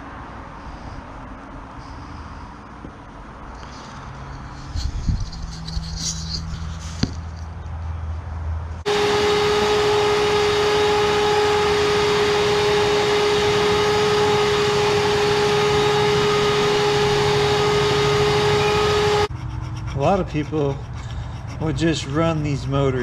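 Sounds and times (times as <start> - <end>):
power tool motor running: 8.9 - 19.3.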